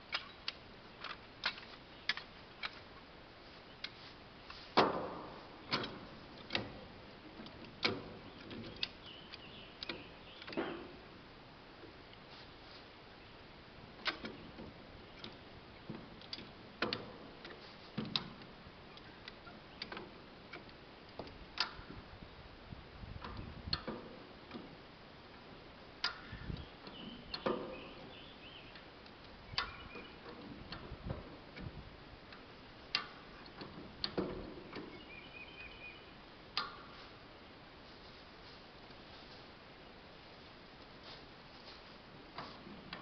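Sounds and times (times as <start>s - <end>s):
metal clicks and knocks: 4.8s - 11.0s, 14.0s - 22.1s, 23.2s - 24.8s, 25.4s - 28.1s, 28.7s - 35.0s.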